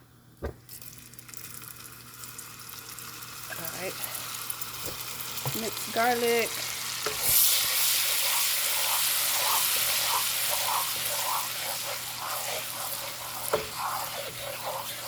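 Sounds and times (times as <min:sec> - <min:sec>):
sauce sizzling in a pan: 0:00.8 - 0:15.0
stirring in a pan: 0:04.9 - 0:15.0.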